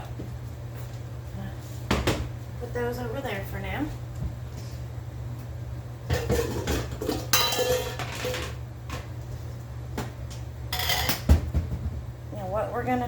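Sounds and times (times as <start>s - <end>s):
dishes and pans clattering: 6.1s - 9.1s, 10.7s - 11.8s.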